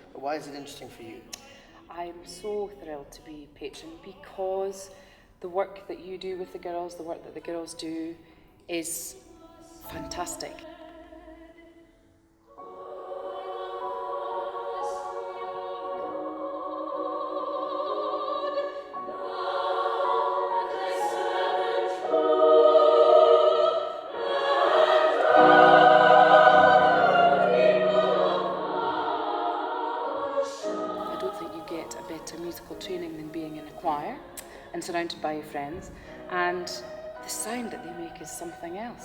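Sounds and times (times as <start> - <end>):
girls' choir singing: 9.0 - 39.0.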